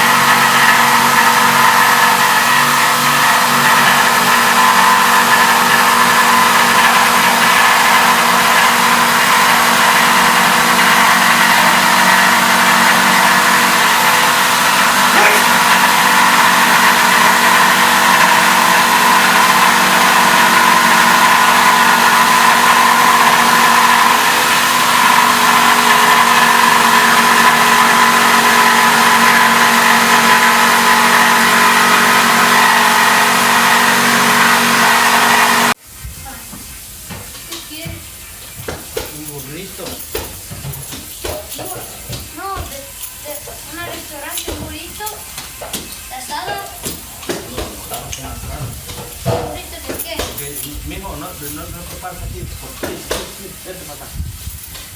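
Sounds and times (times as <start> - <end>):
loud machine drone: 0.0 - 35.8.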